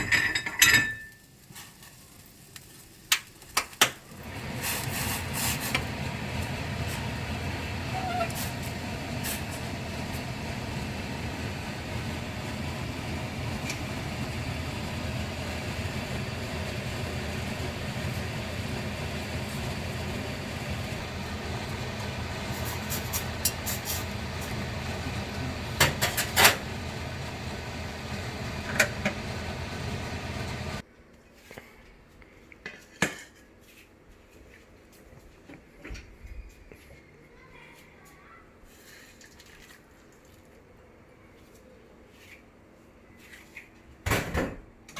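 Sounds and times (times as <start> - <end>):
dishes and utensils clinking: 0.0 - 1.2.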